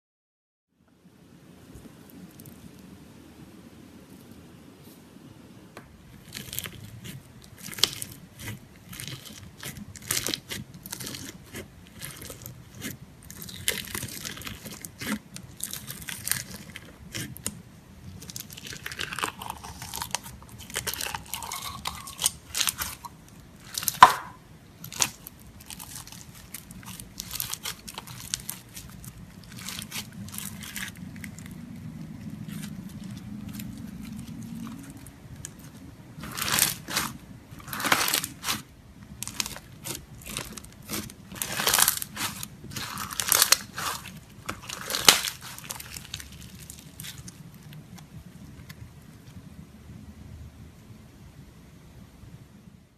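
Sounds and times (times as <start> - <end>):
slime squelching and popping: 6.1 - 48.7.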